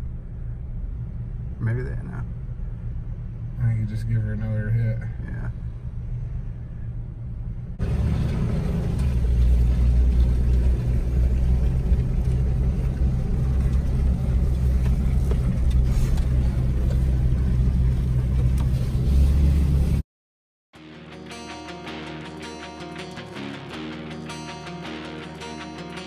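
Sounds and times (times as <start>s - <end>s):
vehicle engine and road drone: 0.0s - 20.0s.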